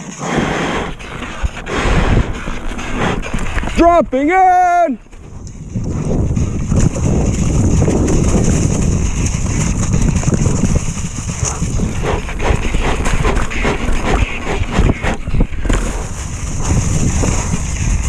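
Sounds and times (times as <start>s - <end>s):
bike tyres on dirt: 0.0s - 18.0s
wind buffeting microphone: 0.7s - 18.0s
bike clattering over bumps: 5.1s - 18.0s.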